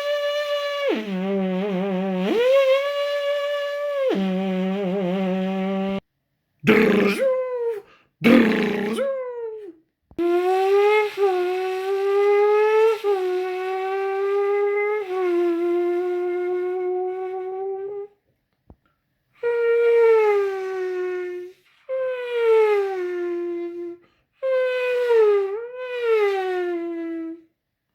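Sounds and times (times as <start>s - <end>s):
person imitating car engines: 6.6s - 9.7s.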